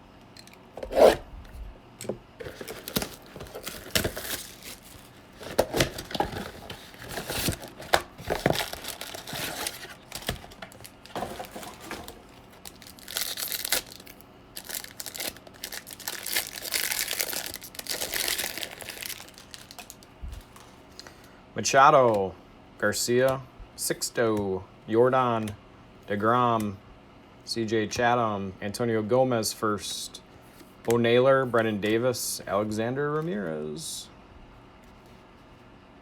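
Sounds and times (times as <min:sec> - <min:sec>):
card wrappers tearing and crinkling: 0:02.4 - 0:20.8.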